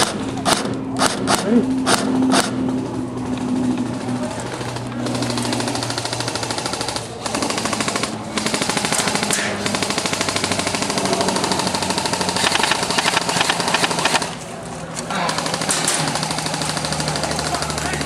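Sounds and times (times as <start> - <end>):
airsoft guns firing bursts: 0.0 - 14.4, 15.1 - 18.0.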